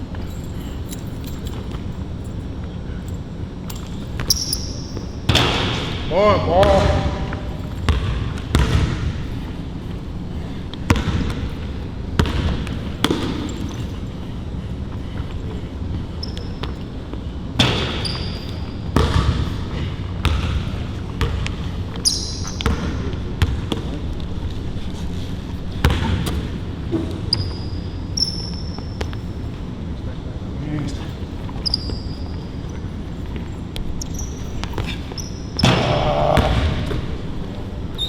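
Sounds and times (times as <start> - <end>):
sneakers squeaking on floor: 0.0 - 24.4, 25.0 - 29.7, 30.9 - 38.0
basketball bouncing on a court: 3.8 - 14.2, 16.2 - 24.5, 25.7 - 29.5, 31.5 - 38.0.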